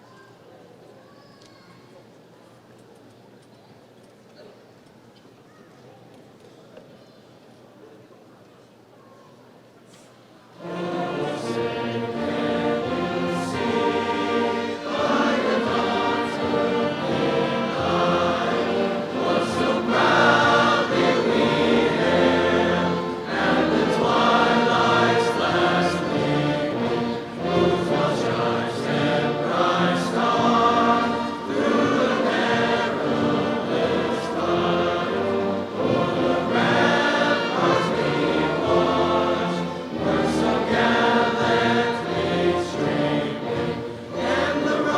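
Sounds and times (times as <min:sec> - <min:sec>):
choir singing in harmony: 0:10.6 - 0:44.9.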